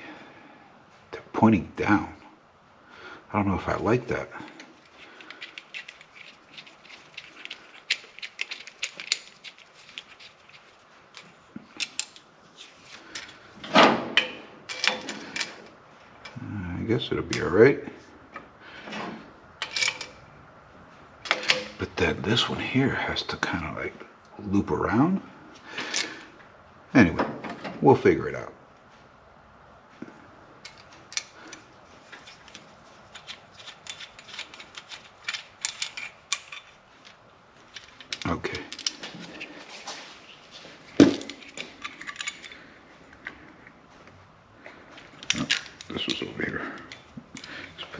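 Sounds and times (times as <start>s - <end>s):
clicks and clatter of hoses: 4.4s - 16.3s, 30.6s - 47.9s
soft rubbing of hoses: 12.4s - 13.6s.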